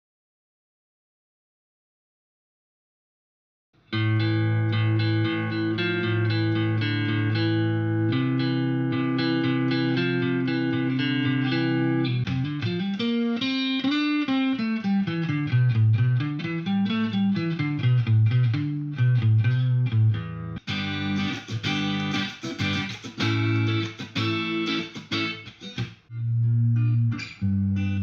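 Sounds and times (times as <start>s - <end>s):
guitar melody with bending notes: 3.9s - 28.0s
strummed guitar chords: 3.9s - 28.0s.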